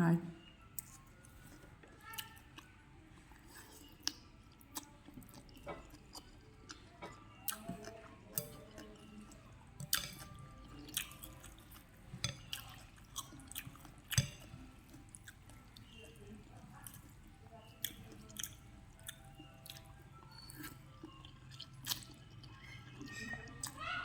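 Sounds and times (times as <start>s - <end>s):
wet chewing with smacks: 0.8s - 24.0s.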